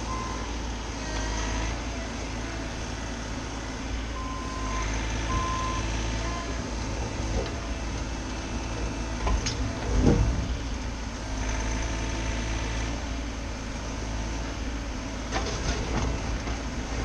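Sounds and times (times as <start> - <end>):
diesel engine running: 0.0 - 17.0
metal clanks and scrapes: 15.3 - 16.6.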